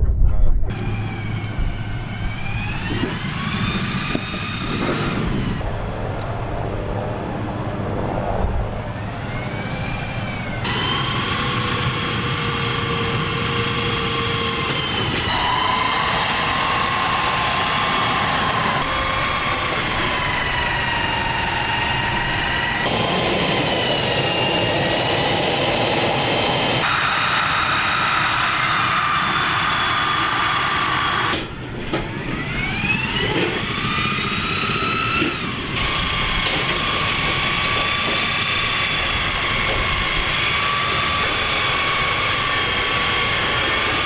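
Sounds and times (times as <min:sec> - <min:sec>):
gas turbine engine whine: 0:00.0 - 0:44.0.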